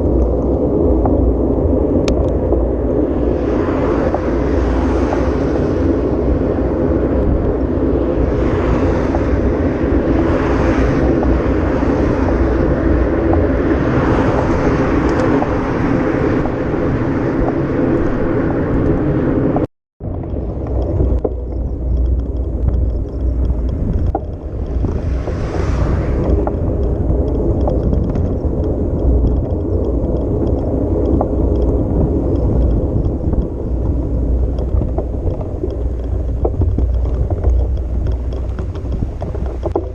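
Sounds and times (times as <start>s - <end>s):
wind buffeting microphone: 0.0s - 39.9s
vehicle engine running: 20.0s - 39.9s.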